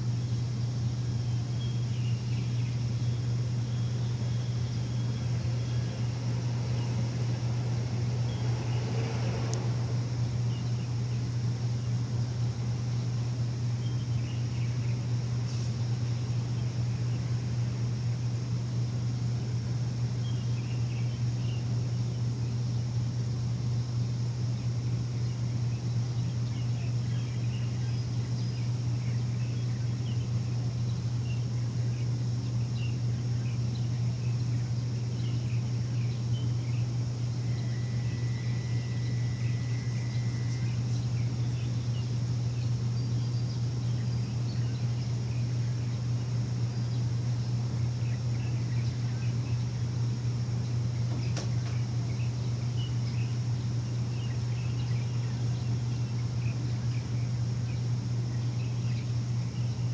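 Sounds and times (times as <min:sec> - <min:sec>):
birds chirping: 0:00.0 - 0:59.9
machine low hum: 0:00.0 - 0:59.9.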